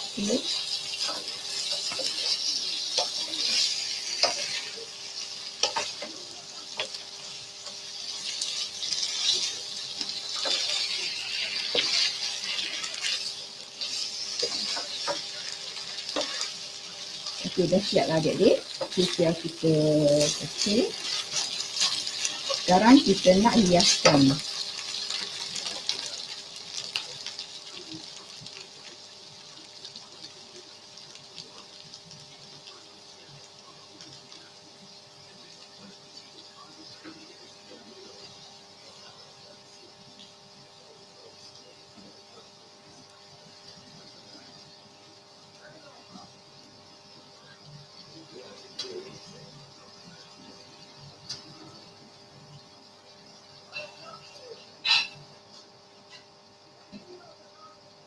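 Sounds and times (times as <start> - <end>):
noodles sizzling in a pan: 0.0 - 58.0
spatula scraping a pan: 0.2 - 7.0, 7.7 - 17.6, 18.7 - 25.5.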